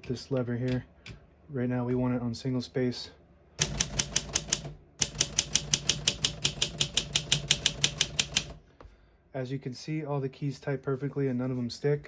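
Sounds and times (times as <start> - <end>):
manual typewriter typing: 3.6 - 8.6.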